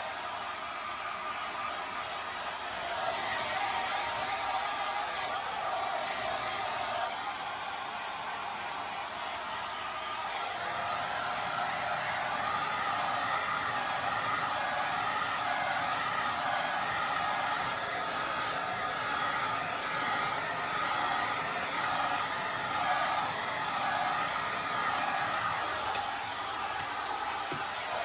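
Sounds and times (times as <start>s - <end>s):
hair dryer blowing: 0.0s - 28.0s.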